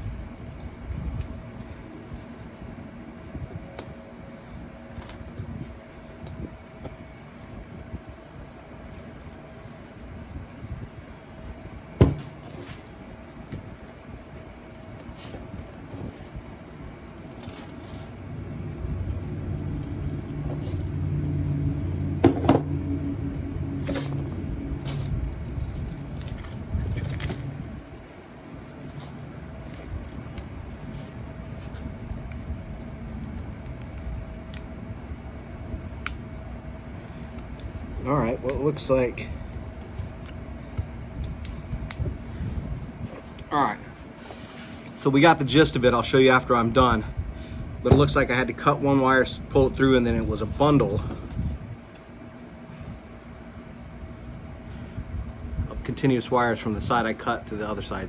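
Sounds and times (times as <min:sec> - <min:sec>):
steady hum: 0:00.0 - 0:58.0
low rumble: 0:18.0 - 0:28.1.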